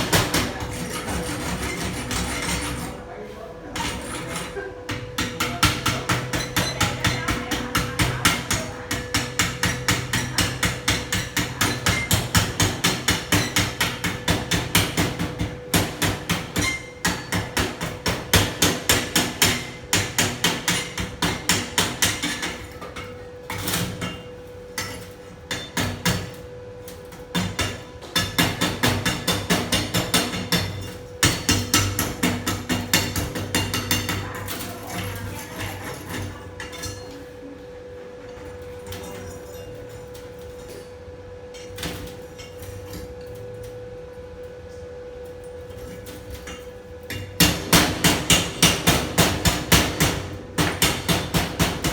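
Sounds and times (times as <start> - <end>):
hammer striking metal: 3.8 - 22.7, 27.3 - 35.3.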